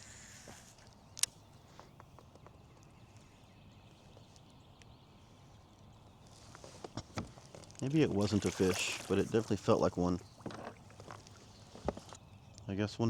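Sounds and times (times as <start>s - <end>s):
fishing gear clicking and knocking: 7.2s - 12.2s.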